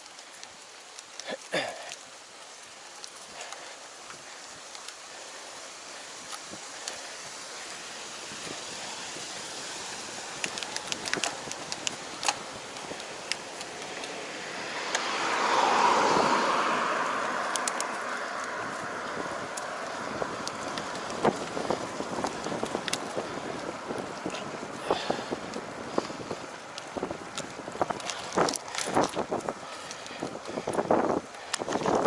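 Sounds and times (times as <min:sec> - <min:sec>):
road and wind noise: 0:00.0 - 0:32.0
car passing by: 0:03.0 - 0:32.0
sharp ticks: 0:17.4 - 0:18.6.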